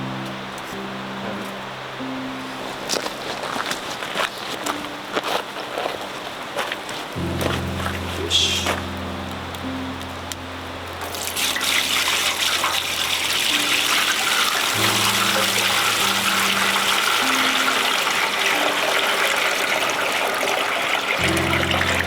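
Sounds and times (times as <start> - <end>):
water pouring: 11.0 - 22.0.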